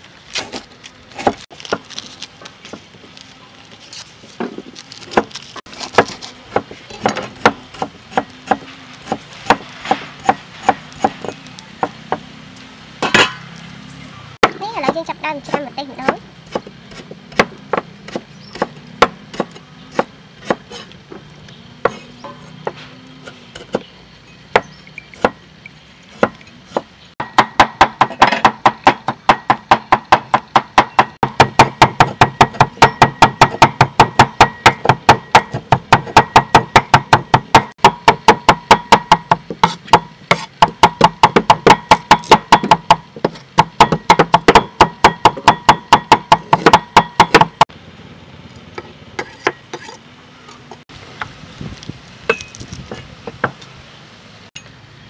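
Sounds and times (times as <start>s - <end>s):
knife chopping on wooden board: 15.5s - 20.9s, 21.8s - 22.8s, 26.2s - 47.5s.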